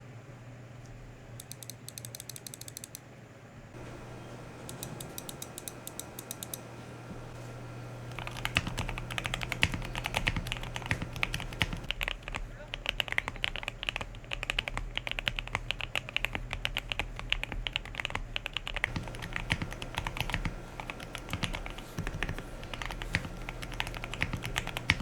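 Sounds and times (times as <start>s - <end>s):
typing on mechanical keyboard: 1.4s - 3.0s, 8.1s - 25.0s.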